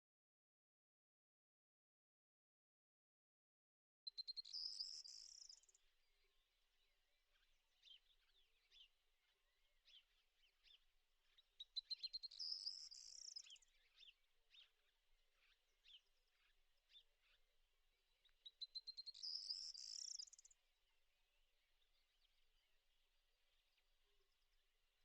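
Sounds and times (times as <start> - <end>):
songbird singing buzzy trill: 4.1 - 17.4, 18.1 - 20.9.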